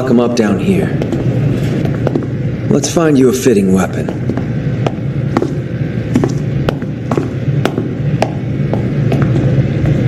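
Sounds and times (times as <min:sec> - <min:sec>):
low droning hum: 0:00.0 - 0:10.0
footsteps on hard floor: 0:01.0 - 0:02.4, 0:04.0 - 0:10.0.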